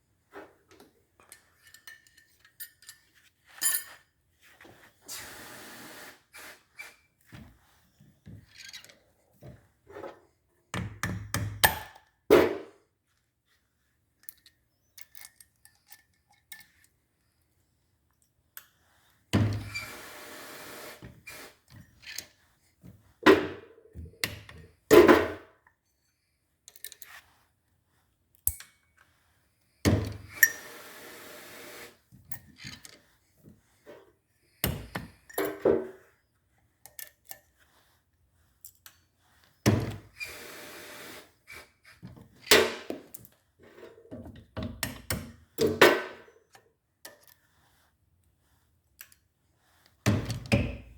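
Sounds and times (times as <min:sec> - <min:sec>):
metal knocks and clinks: 0:01.3 - 0:04.0.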